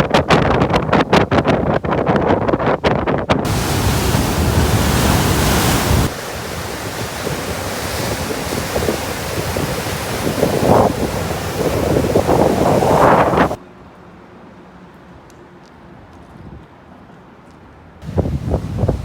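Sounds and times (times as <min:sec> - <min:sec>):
wind on microphone: 0:00.0 - 0:13.6, 0:18.0 - 0:19.0
sea waves breaking on shore: 0:03.5 - 0:13.6.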